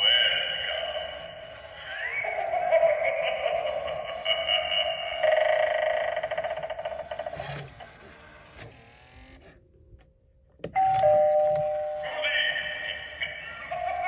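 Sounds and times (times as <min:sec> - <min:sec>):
two-tone ding-dong chime: 0:10.8 - 0:12.2.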